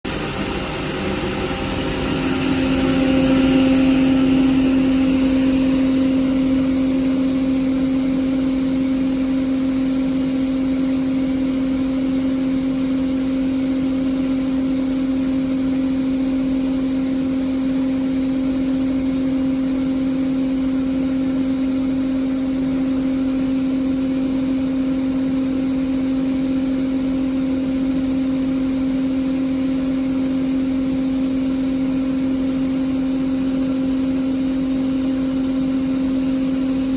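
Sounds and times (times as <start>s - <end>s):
air compressor humming: 0.0s - 36.9s.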